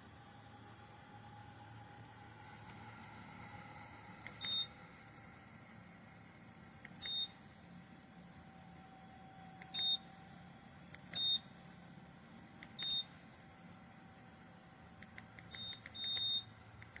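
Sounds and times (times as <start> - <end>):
heater humming: 0.0 - 17.0
short high beeps: 15.6 - 16.5.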